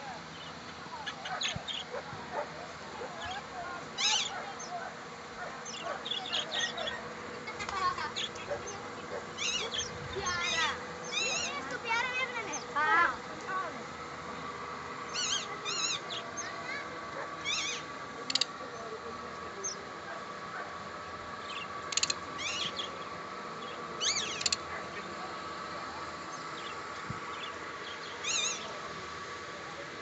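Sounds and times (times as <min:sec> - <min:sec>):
birds shrill wavering calls: 0:00.0 - 0:13.7, 0:15.0 - 0:18.5, 0:21.4 - 0:24.7, 0:26.3 - 0:28.8.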